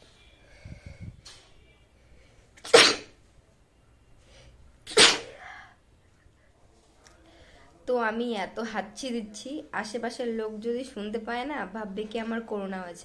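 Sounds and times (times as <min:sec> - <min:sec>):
woman sneezing: 0:02.6 - 0:03.1, 0:04.9 - 0:05.6.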